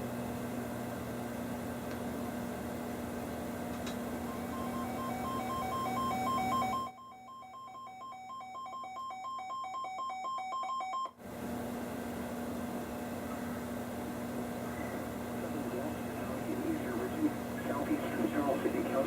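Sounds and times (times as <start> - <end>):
alternating two-tone alarm beeping: 4.3 - 11.2
radio static: 14.6 - 19.0.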